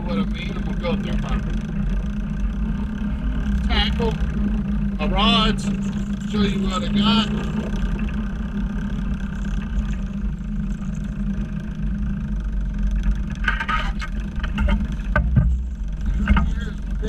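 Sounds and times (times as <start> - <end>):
motor rumble and hum: 0.0 - 17.0
sharp clicks and knocks: 13.0 - 16.8.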